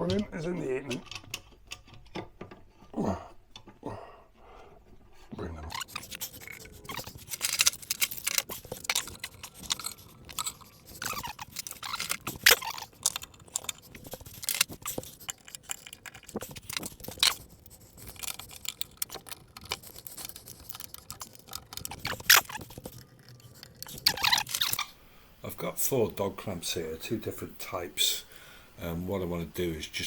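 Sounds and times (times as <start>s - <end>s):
clamps clicking and knocking: 0.9s - 2.9s.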